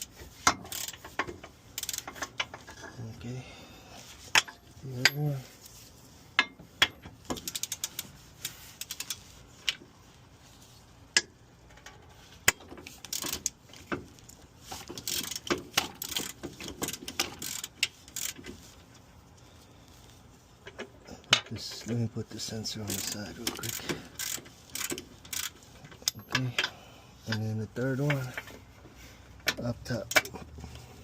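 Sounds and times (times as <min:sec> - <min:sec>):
ratchet wrench clicking: 0:00.0 - 0:02.8, 0:04.1 - 0:05.4, 0:06.4 - 0:09.8, 0:11.1 - 0:18.7, 0:22.6 - 0:27.4, 0:29.4 - 0:30.4.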